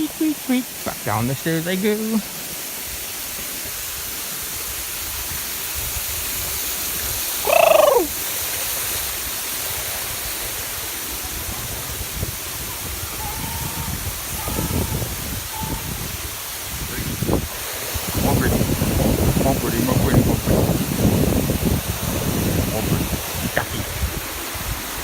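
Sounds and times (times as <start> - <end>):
bird call sliding down: 7.4 - 8.1.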